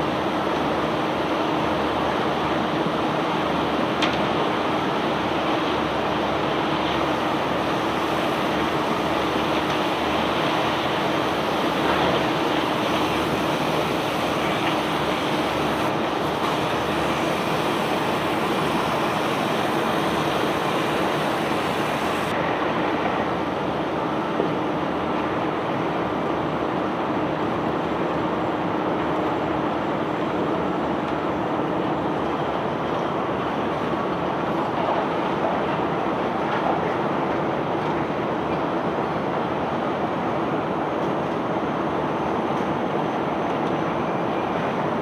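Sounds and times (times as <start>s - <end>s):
hiss: 7.0s - 22.3s.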